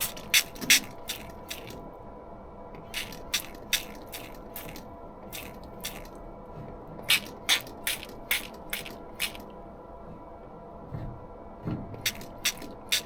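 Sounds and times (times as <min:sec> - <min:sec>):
spray bottle squirting: 0:00.0 - 0:01.8, 0:02.9 - 0:06.2, 0:07.1 - 0:09.4, 0:12.0 - 0:13.0
steady background hum: 0:00.0 - 0:13.0.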